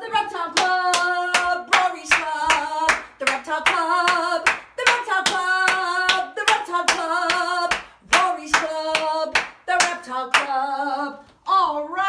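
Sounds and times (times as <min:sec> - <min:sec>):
woman singing a chant: 0:00.0 - 0:12.0
hands clapping: 0:00.6 - 0:10.5.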